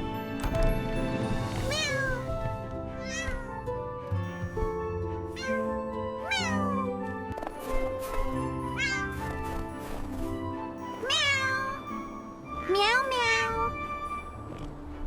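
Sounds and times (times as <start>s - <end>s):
soft background music: 0.0s - 15.0s
cat meowing: 1.7s - 2.3s, 3.0s - 3.6s, 5.4s - 6.9s, 8.6s - 9.3s, 10.9s - 11.9s, 12.6s - 13.8s.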